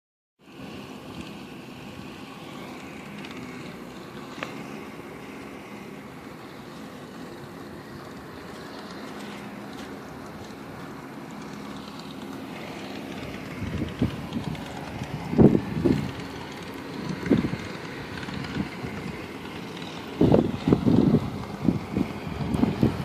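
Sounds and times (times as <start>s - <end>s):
snowstorm wind: 0.6s - 23.0s
wind gusts buffeting microphone: 7.8s - 23.0s
steady low rumble: 11.4s - 23.0s.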